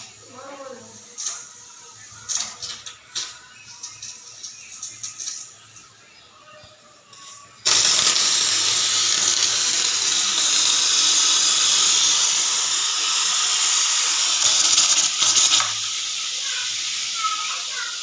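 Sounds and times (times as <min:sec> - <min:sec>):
pressure cooker steam hissing: 0:07.1 - 0:18.0.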